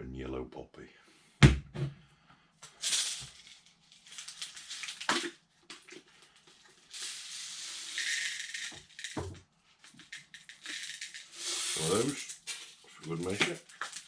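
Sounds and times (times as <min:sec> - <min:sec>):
liquid pouring: 0:10.0 - 0:14.0.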